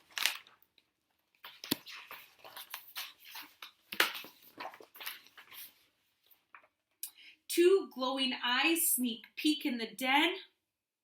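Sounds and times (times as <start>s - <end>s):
paper pages rustling: 0.0s - 6.8s.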